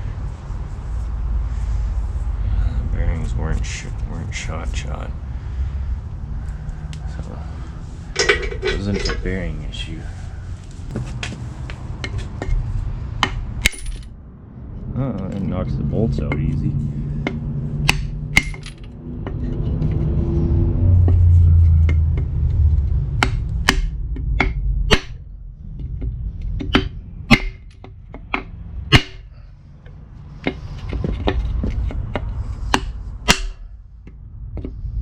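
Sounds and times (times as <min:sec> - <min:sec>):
low rumble: 0:00.0 - 0:35.0
hammer striking steel: 0:17.2 - 0:18.8, 0:23.2 - 0:25.3, 0:26.7 - 0:27.7, 0:28.3 - 0:29.4, 0:32.7 - 0:33.8.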